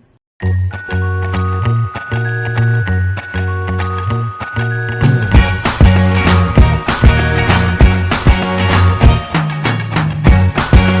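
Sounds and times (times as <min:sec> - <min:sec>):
upbeat funk pop music: 0:05.0 - 0:11.0.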